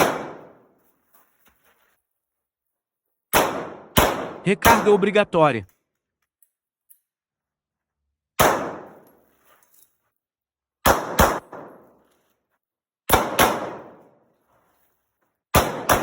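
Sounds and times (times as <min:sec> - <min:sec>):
pistol shots: 0:00.0 - 0:00.7, 0:03.3 - 0:05.2, 0:08.4 - 0:09.1, 0:10.8 - 0:11.9, 0:13.1 - 0:14.2, 0:15.5 - 0:16.0.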